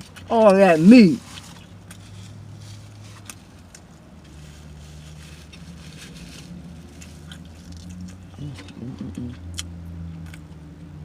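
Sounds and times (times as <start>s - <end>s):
chewing and mouth smacking: 6.8s - 10.8s.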